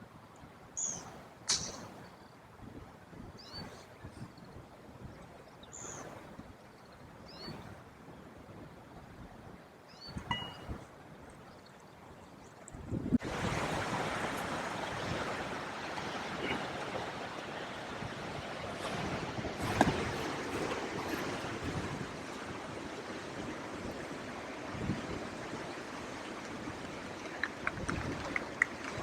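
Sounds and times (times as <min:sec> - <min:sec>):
wind rushing across microphone: 0:12.7 - 0:29.0.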